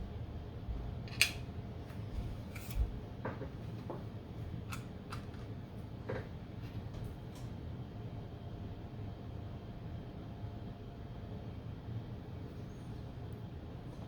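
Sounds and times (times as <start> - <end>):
steady low hum: 0.0 - 14.0
small parts clicking on workbench: 1.1 - 1.4.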